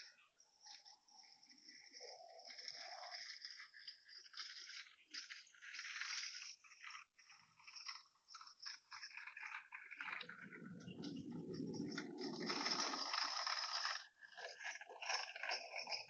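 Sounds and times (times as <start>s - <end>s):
trolley wheels rolling on hard floor: 0.8s - 16.0s.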